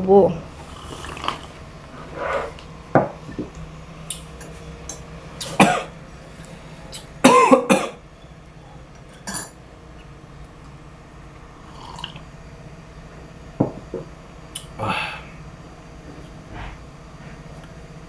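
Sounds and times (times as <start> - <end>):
person clearing throat: 5.4 - 5.9, 7.2 - 8.0, 9.3 - 9.6
person coughing: 5.5 - 5.9, 7.2 - 8.0.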